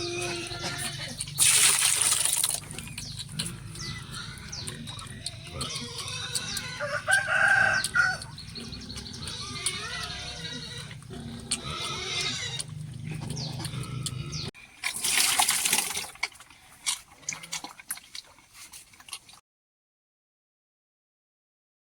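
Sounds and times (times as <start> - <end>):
animal call: 2.7 - 14.5.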